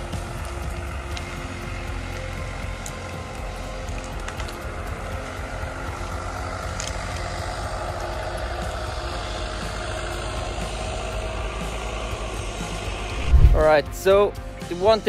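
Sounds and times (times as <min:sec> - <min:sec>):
tractor engine droning: 0:00.0 - 0:14.2.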